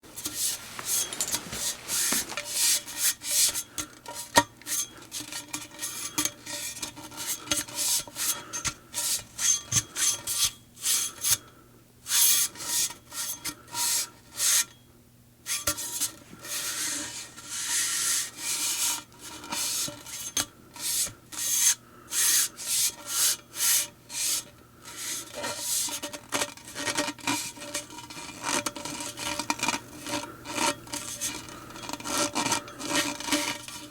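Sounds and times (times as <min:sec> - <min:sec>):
handle scraping back and forth: 0:00.0 - 0:11.2, 0:23.7 - 0:33.9.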